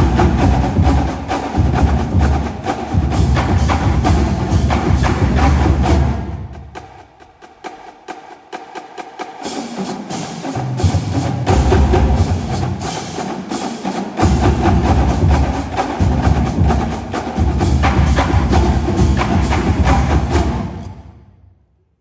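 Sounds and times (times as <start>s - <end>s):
bass drums: 0.0s - 6.8s, 10.8s - 12.8s, 14.2s - 20.7s
marching drumline: 0.0s - 21.5s.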